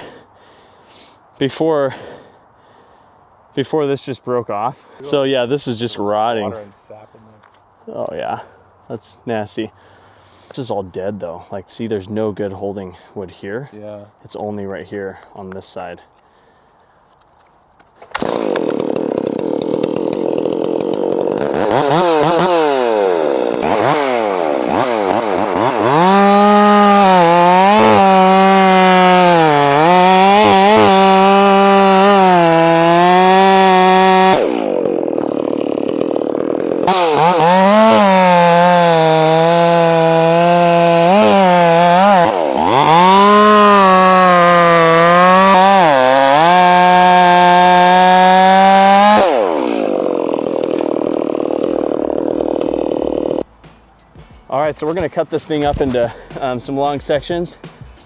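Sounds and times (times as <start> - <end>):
chainsaw cutting into wood: 18.0 - 53.5.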